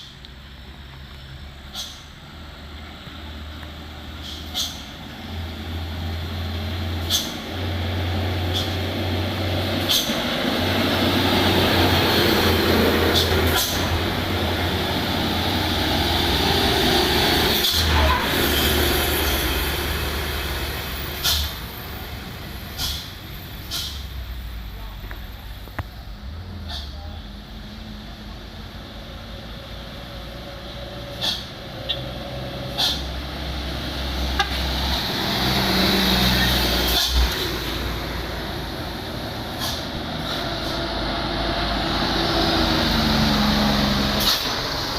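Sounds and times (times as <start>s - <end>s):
diesel truck engine passing: 1.3s - 44.9s
air brakes hissing: 1.6s - 2.2s, 4.1s - 5.0s, 6.9s - 7.5s, 8.4s - 9.0s, 9.6s - 10.4s, 12.3s - 14.0s, 17.4s - 24.4s, 26.6s - 27.1s, 31.1s - 33.3s, 35.6s - 37.8s, 39.4s - 41.0s.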